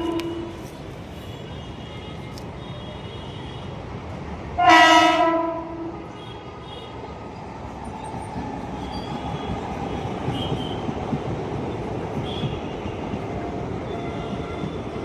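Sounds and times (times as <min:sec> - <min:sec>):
train horn blast: 0:00.0 - 0:00.7, 0:04.6 - 0:06.4
train rumbling: 0:00.0 - 0:15.0.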